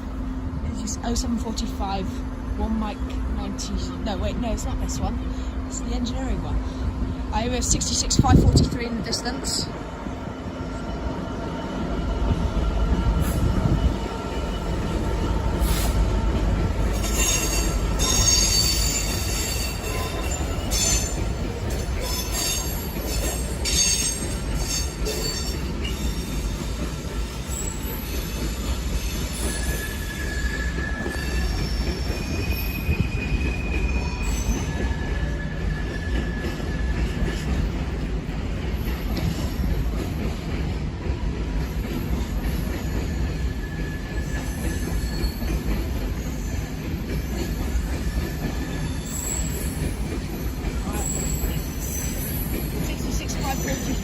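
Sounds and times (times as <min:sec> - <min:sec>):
locomotive engine and wheel rumble: 0:00.0 - 0:54.0
high-pitched wheel squeal: 0:48.6 - 0:49.9.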